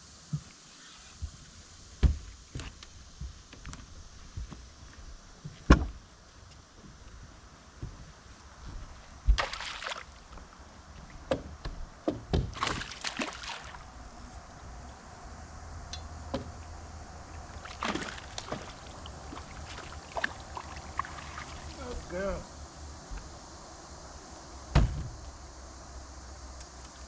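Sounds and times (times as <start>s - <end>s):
knocks on boat hull: 2.0s - 2.7s, 11.3s - 12.6s, 24.7s - 25.1s
water sloshing against boat: 8.8s - 14.4s, 17.3s - 22.3s.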